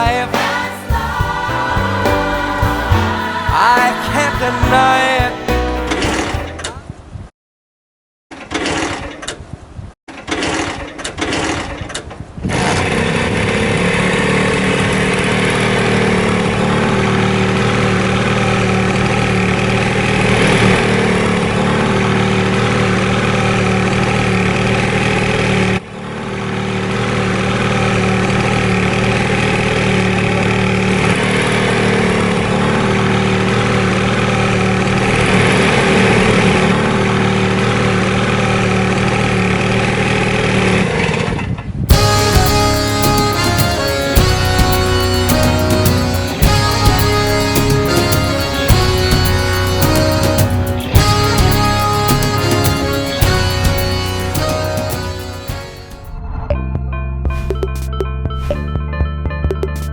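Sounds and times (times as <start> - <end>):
scooter engine running: 41.9 - 55.8.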